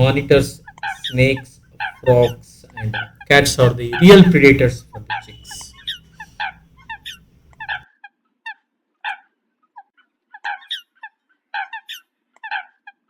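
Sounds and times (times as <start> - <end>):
coot short sharp calls: 0.0 - 7.8.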